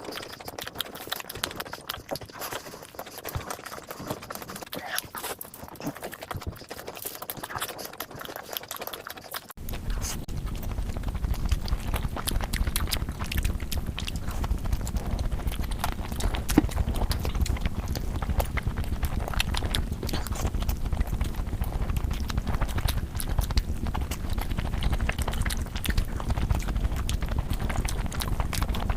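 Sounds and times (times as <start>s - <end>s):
chewing with wet mouth clicks: 0.0s - 28.9s
steady low hum: 9.5s - 28.9s.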